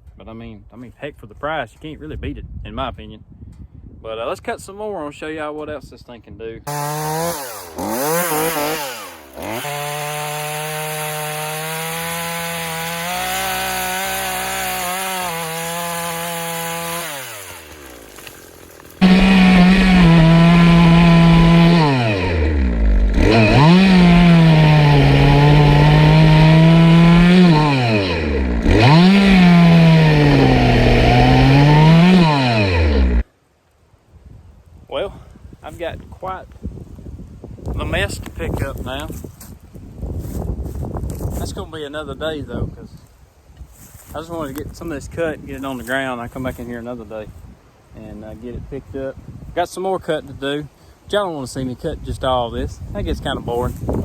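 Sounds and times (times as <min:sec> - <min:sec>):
chainsaw cutting wood: 0:06.7 - 0:33.3.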